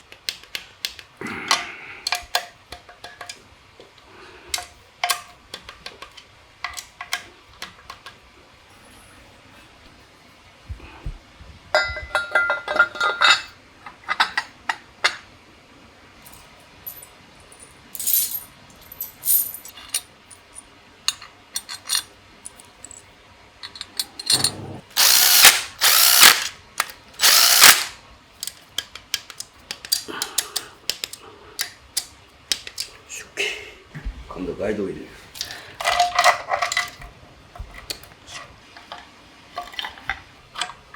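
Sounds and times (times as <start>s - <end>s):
loud bursts of noise: 25.0s - 26.6s, 27.2s - 28.0s
ratchet wrench clicking: 25.0s - 28.6s.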